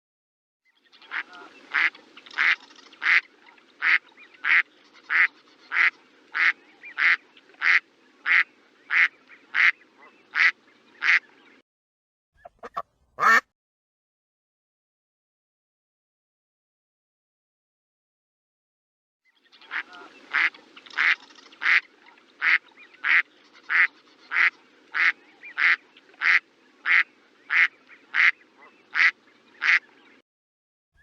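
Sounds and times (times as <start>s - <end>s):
sharp bird calls: 0.7s - 11.6s, 19.2s - 30.2s
duck quacking: 1.1s - 11.2s, 12.4s - 13.5s, 19.7s - 29.8s.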